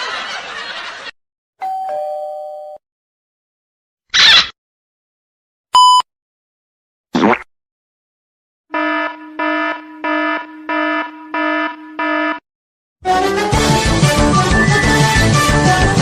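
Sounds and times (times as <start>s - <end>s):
alarm buzzer pulses: 8.7s - 12.4s.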